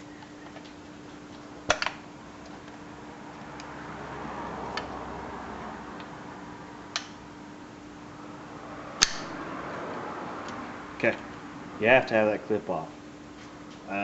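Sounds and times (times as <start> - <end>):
metal clip snapping off: 9.0 - 9.3.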